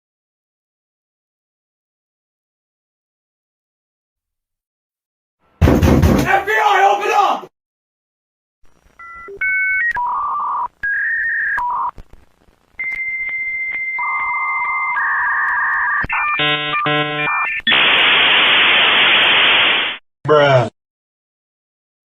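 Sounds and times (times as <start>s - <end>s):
dialing tones: 8.9s - 12.0s, 12.8s - 17.8s
modem warbling buzz: 14.0s - 20.0s
loud modem hiss: 16.4s - 20.0s.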